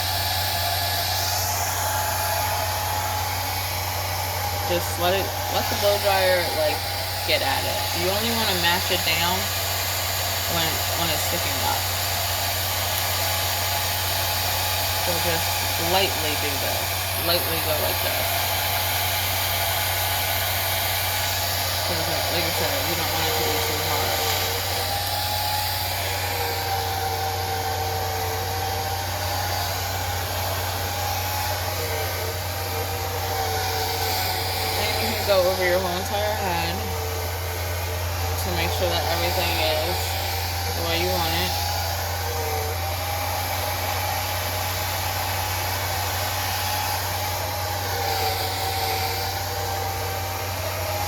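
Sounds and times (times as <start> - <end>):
blow dryer running: 0.0 - 51.0.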